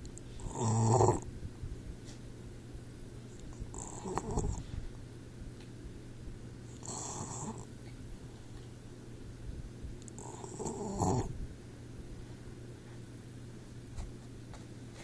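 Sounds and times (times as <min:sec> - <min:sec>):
puppy snoring: 0:00.4 - 0:01.3, 0:03.6 - 0:04.6, 0:06.7 - 0:07.7, 0:10.1 - 0:11.4.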